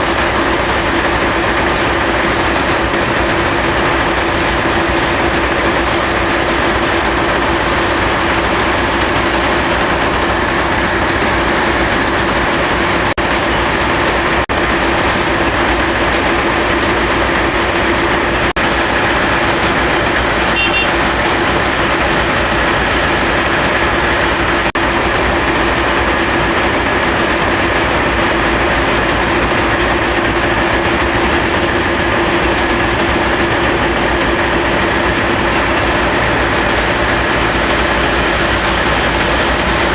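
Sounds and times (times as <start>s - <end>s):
machinery mechanical din: 0.0s - 39.9s
steady machine hum: 0.0s - 39.9s.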